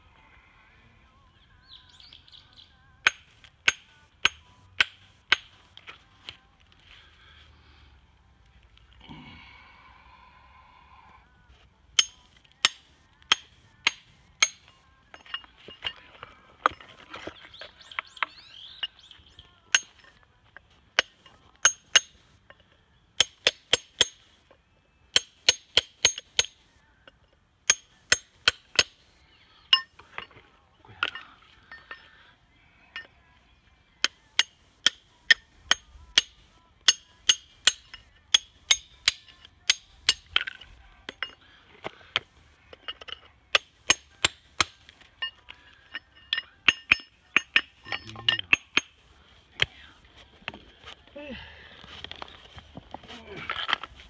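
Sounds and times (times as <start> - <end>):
hammer clinking on stone: 3.0 - 5.6, 12.0 - 19.1, 19.7 - 20.2, 21.0 - 24.4, 25.1 - 26.6, 27.7 - 29.0, 29.7 - 30.4, 34.0 - 41.4, 42.7 - 49.1.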